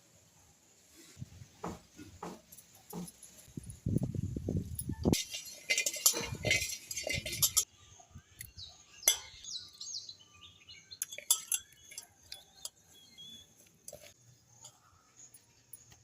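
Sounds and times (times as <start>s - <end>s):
dishes and utensils clattering: 4.8s - 7.7s, 9.1s - 9.4s, 11.0s - 12.9s
birds chirping: 7.2s - 16.0s.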